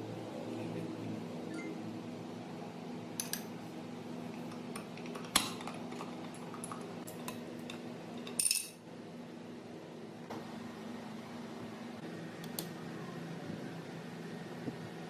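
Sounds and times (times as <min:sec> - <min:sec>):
steady low hum: 0:00.0 - 0:15.0
metal parts clinking: 0:08.2 - 0:08.8.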